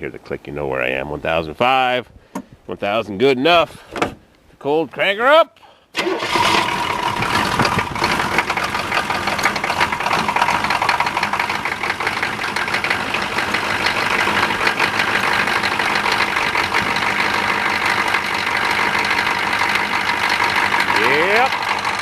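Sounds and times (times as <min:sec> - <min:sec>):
diesel engine knocking: 0:06.3 - 0:22.0.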